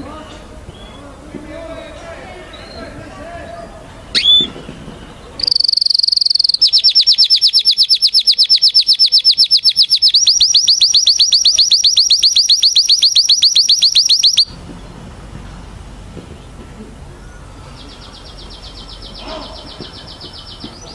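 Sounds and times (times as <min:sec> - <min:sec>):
canary singing: 0:02.4 - 0:14.6, 0:17.2 - 0:20.9.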